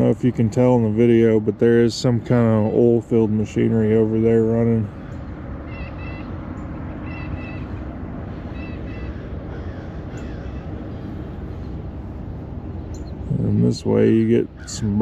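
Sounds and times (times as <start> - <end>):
machinery humming: 0.0 - 15.0
crows cawing: 4.9 - 11.7, 14.5 - 15.0.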